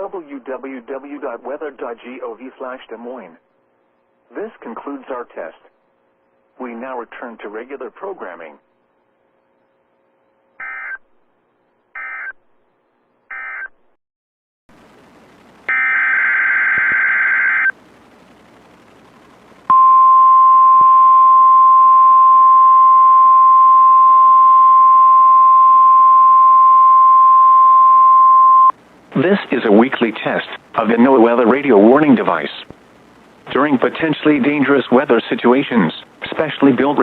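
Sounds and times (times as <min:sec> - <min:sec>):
radio hiss: 0:04.2 - 0:05.7, 0:14.7 - 0:19.8, 0:28.7 - 0:37.0
steady warning alarm tone: 0:15.7 - 0:17.7
short digital data bursts: 0:15.7 - 0:17.8
warbling data burst: 0:15.7 - 0:17.8.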